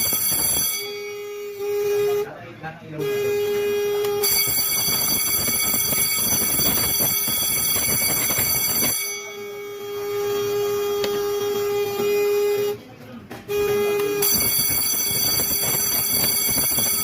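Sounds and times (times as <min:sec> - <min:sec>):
fire alarm bell ringing: 0:00.0 - 0:01.7, 0:04.1 - 0:12.0, 0:14.1 - 0:17.0
steady buzzer tone: 0:00.0 - 0:17.0.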